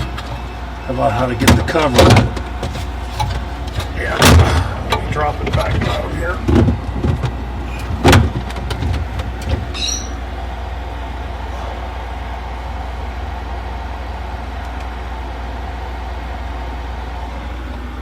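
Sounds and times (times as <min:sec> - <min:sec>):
refrigerator humming: 0:00.0 - 0:18.0
freezer panel clunking: 0:01.2 - 0:10.1
short squeak: 0:07.6 - 0:08.0, 0:09.7 - 0:10.2.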